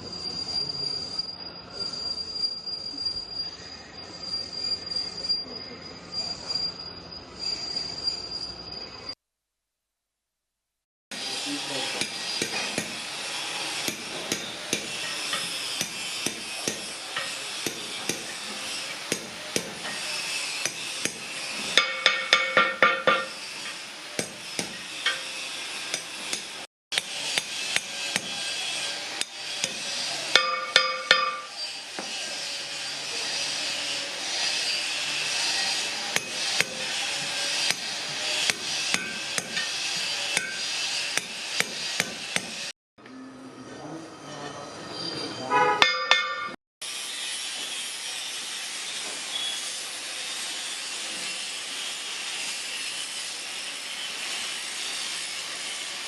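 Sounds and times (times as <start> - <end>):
hammer striking bronze: 11.9 - 28.6, 29.2 - 32.2, 36.1 - 42.7, 45.5 - 46.6.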